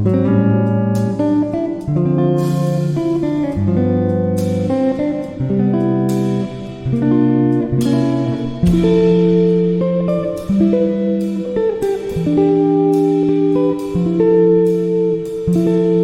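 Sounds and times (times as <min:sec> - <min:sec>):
plucked guitar chords: 0:00.0 - 0:16.0.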